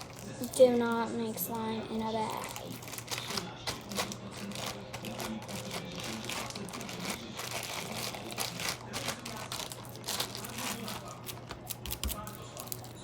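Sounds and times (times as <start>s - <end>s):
plastic bag crinkling: 0.0s - 13.0s.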